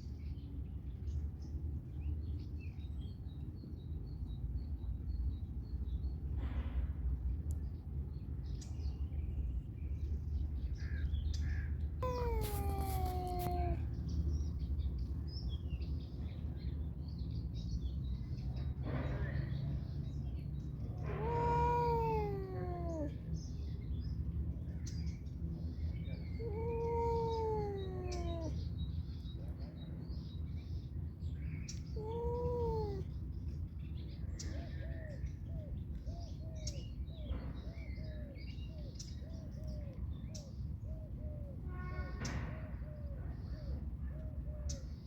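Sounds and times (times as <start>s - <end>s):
cat meowing: 12.0s - 13.9s, 21.0s - 23.2s, 26.4s - 28.6s, 32.0s - 33.0s.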